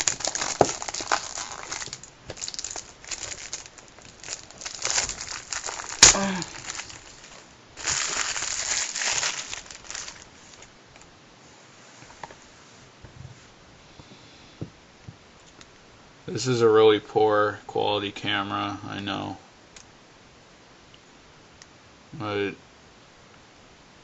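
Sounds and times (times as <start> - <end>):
plastic wrapping crinkling: 0.0 - 11.1.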